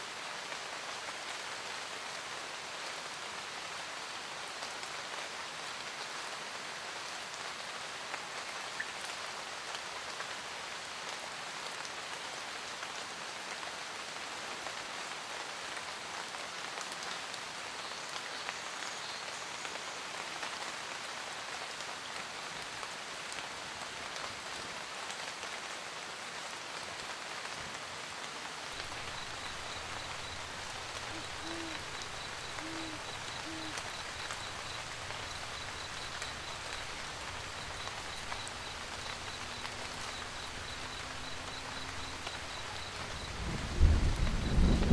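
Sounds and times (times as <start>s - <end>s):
rain pattering on a roof: 0.0s - 44.9s
owl hooting: 28.8s - 43.4s.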